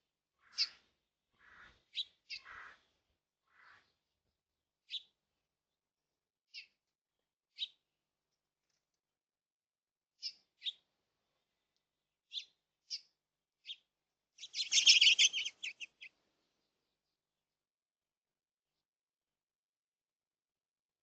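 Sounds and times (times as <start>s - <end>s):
bird chirping: 12.3s - 13.8s, 14.4s - 16.2s.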